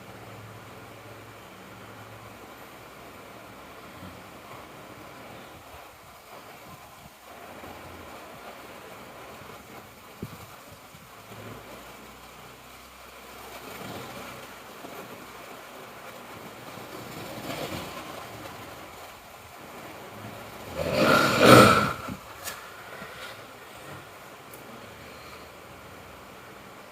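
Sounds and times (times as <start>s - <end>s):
person snoring: 20.7s - 22.2s.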